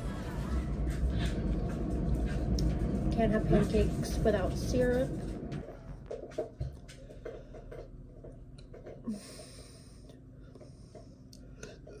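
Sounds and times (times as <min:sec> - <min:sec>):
faint clicks and taps: 0:05.1 - 0:09.2
person breathing: 0:09.1 - 0:12.0.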